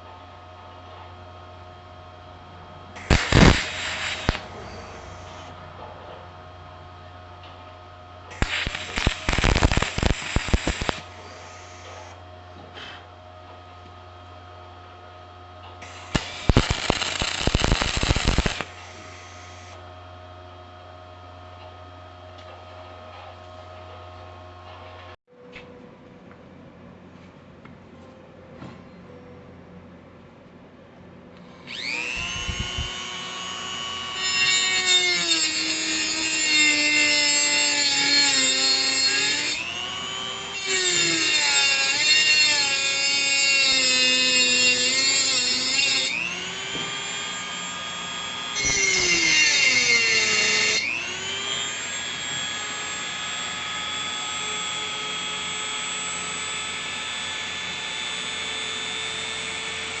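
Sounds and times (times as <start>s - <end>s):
drill press motor whine: 1.8s - 5.8s, 6.4s - 12.7s, 13.8s - 22.2s, 31.4s - 60.0s
drill bit grinding into work: 3.0s - 5.5s, 8.3s - 12.1s, 15.8s - 19.8s, 31.6s - 60.0s.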